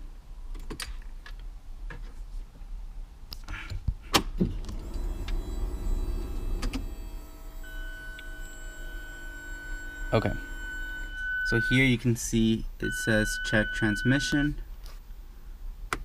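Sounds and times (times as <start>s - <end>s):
electric pump motor whirring: 4.6s - 11.2s
steady electronic warning tone: 4.8s - 14.5s.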